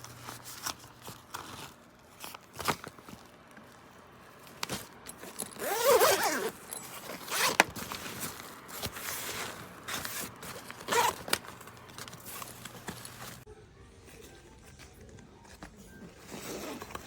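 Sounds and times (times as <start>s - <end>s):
fabric rustling: 0.0s - 13.5s
backpack zipper being pulled: 5.6s - 6.6s, 7.3s - 7.7s, 10.9s - 11.2s.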